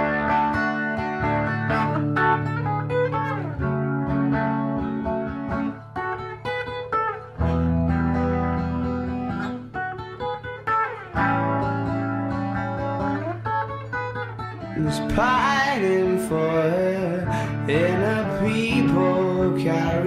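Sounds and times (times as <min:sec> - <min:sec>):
indie rock guitar chords: 0:00.0 - 0:20.0.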